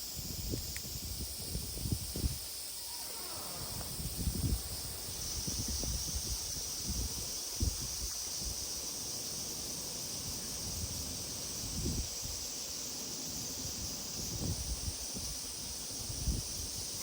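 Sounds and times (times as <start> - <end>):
steady high hiss: 0.0 - 17.0
wind buffeting microphone: 0.2 - 2.5, 3.3 - 8.6, 11.6 - 12.5, 13.7 - 17.0.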